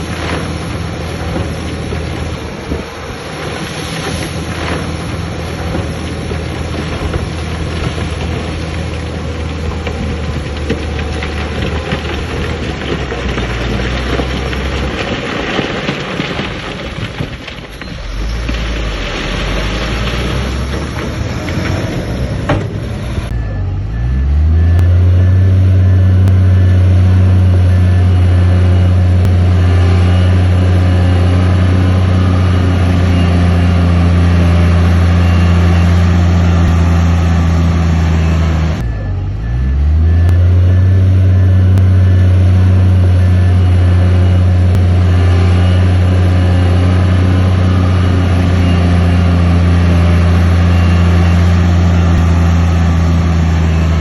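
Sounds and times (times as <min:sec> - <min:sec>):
heavy diesel engine revving: 0:17.8 - 0:54.0
faint repeating high beep: 0:38.8 - 0:44.4.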